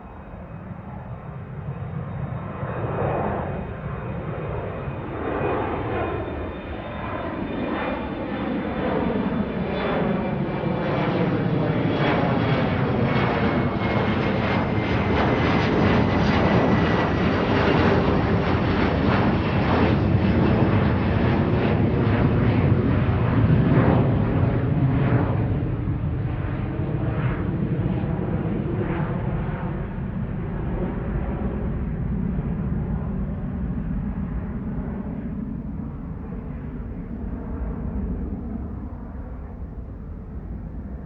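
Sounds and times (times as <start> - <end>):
airplane engine rumble: 0.0 - 41.0.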